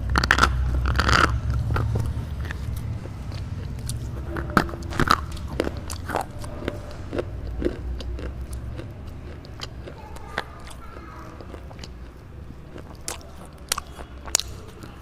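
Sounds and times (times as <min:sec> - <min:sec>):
low rumble: 0:00.0 - 0:09.7
close chewing crunches: 0:00.0 - 0:15.0.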